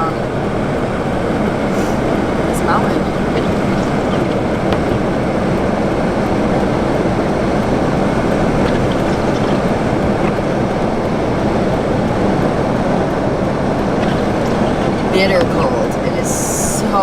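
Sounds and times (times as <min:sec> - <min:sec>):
blizzard wind roaring: 0:00.0 - 0:17.0.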